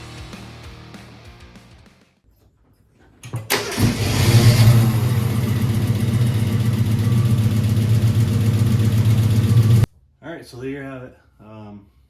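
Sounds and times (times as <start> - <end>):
car engine starting and idling: 3.3 - 9.9.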